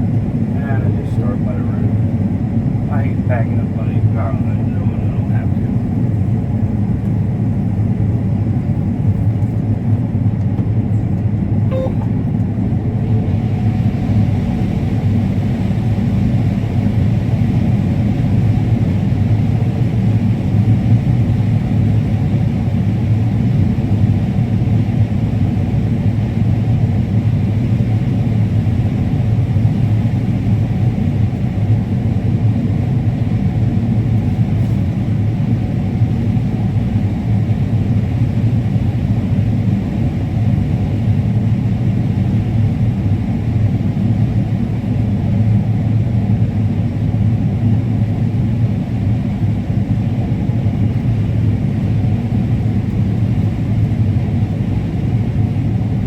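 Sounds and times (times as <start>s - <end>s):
combine harvester drone: 0.0s - 56.0s.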